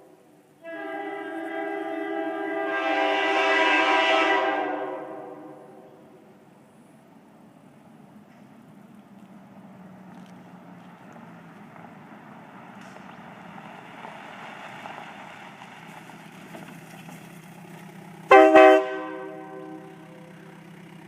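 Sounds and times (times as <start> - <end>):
train air horn blast: 0.6 - 6.2, 18.3 - 20.5.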